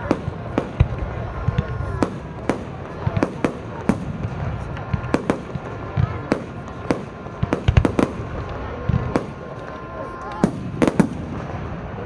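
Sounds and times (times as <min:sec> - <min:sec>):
fireworks bursting: 0:00.0 - 0:12.0.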